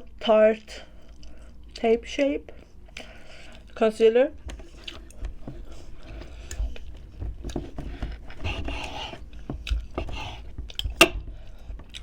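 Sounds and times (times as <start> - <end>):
person chewing food: 0.7 - 1.8, 2.6 - 3.8, 4.5 - 12.0.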